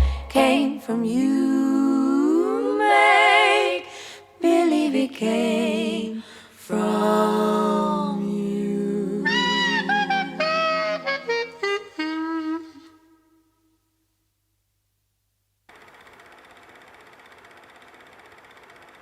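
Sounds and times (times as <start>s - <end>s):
unaccompanied close harmony singing: 0.0s - 11.5s.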